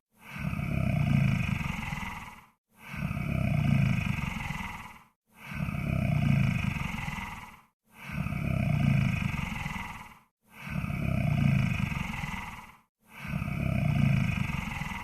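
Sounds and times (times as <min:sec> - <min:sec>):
deep rumbling snoring: 0:00.2 - 0:15.0.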